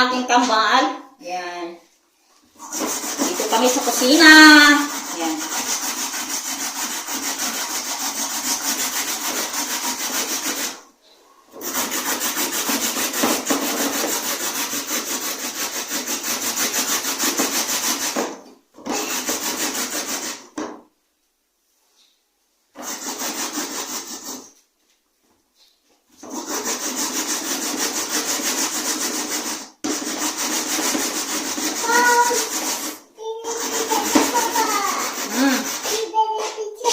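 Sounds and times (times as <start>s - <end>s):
carrot rasping on a grater: 2.6s - 10.8s, 11.6s - 18.2s, 22.8s - 24.6s, 26.2s - 36.2s.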